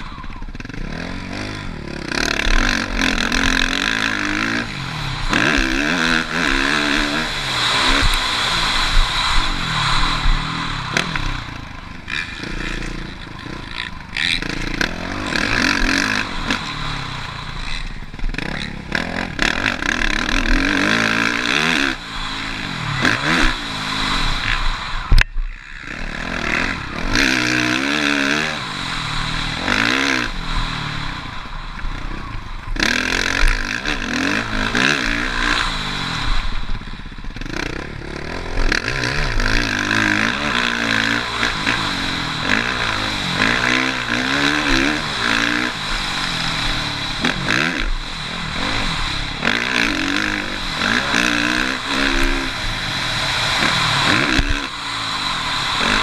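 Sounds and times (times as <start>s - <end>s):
motocross bike engine revving: 0.0s - 56.0s.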